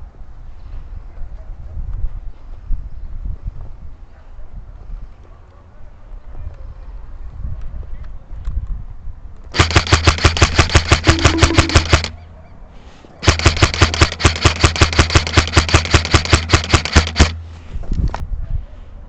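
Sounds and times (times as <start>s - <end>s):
airsoft gun automatic fire: 9.5s - 12.2s, 13.2s - 17.4s.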